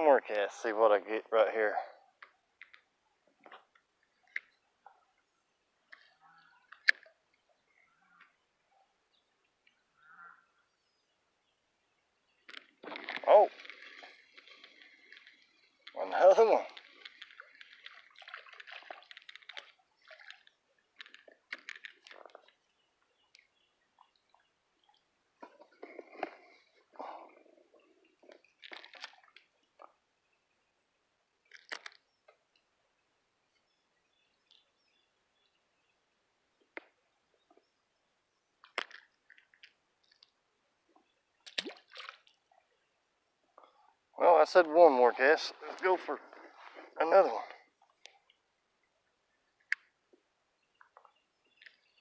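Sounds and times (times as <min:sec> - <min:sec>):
small clicks: 0:02.2 - 0:04.6, 0:12.4 - 0:22.6, 0:31.5 - 0:32.7
water splashing and dripping: 0:12.4 - 0:22.6, 0:28.1 - 0:30.0, 0:38.6 - 0:40.4, 0:41.4 - 0:42.6.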